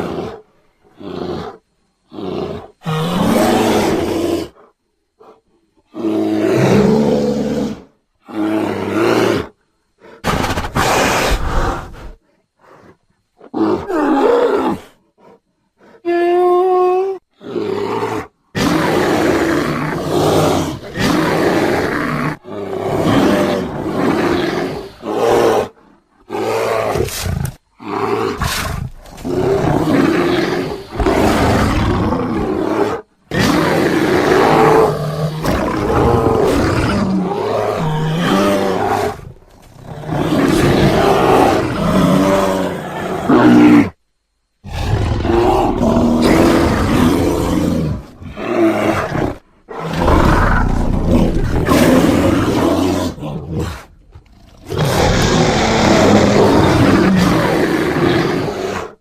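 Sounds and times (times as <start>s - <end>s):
creature roars and growls: 16.0s - 44.0s, 44.6s - 59.0s.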